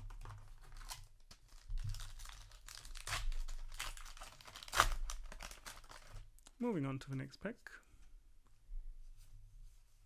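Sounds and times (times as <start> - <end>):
plastic wrapper crinkling and tearing: 0.0 - 6.6.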